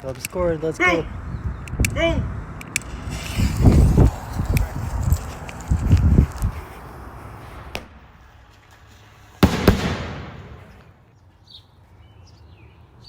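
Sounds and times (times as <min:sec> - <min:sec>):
fireworks bursts: 0:02.7 - 0:08.2, 0:09.2 - 0:11.0
loud echoing firework bang: 0:09.4 - 0:10.9
firework sharp crack: 0:09.4 - 0:11.0.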